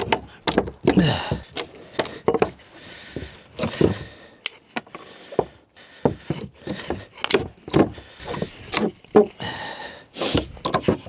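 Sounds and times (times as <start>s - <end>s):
objects knocking and clinking: 0.0s - 2.1s, 4.4s - 5.1s, 10.4s - 11.0s.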